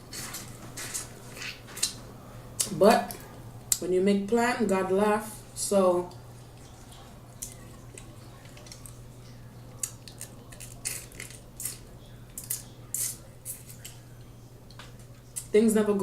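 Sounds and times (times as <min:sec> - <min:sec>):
crab shells cracking and chewing: 0:06.6 - 0:09.0, 0:09.8 - 0:14.0.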